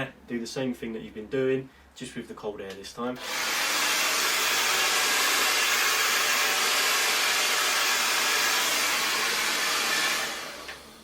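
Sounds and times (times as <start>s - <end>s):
hair dryer blowing: 3.2s - 11.0s.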